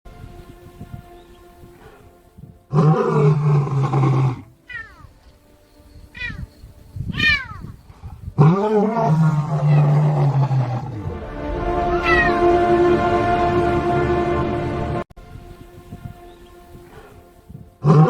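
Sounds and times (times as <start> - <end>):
lions yawning calls: 8.4 - 11.0.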